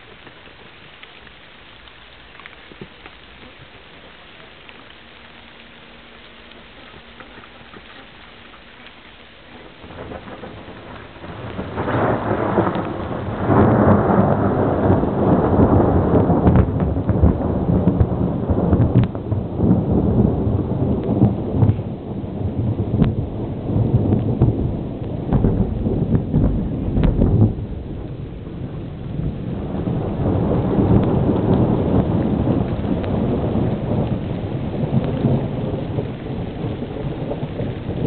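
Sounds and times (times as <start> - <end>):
rain: 0.0 - 38.0
thunder rolling: 9.4 - 38.0.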